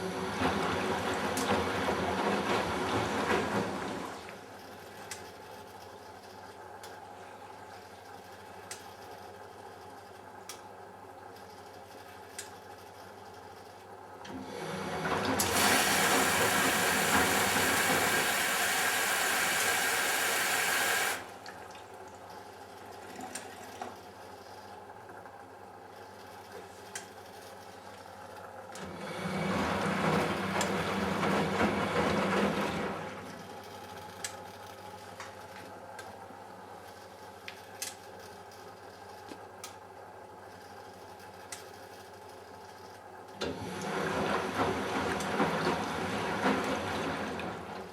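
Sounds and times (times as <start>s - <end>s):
water rushing in washing machine: 0.0s - 5.0s, 14.3s - 22.2s, 28.8s - 33.7s, 43.4s - 47.9s
washing machine humming: 0.0s - 47.9s.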